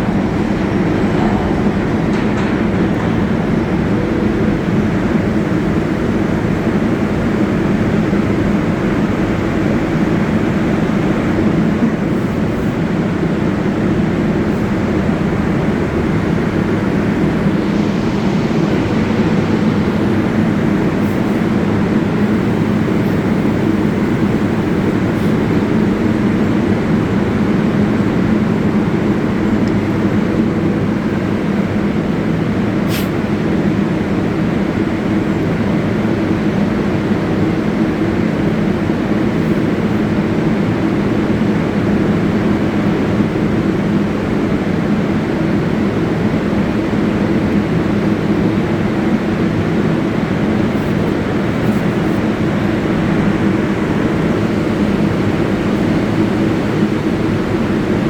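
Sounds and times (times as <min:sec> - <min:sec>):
low hum: 0:00.0 - 0:09.5, 0:14.3 - 0:31.9
subway train running: 0:00.0 - 0:58.0
brief click: 0:32.9 - 0:33.1.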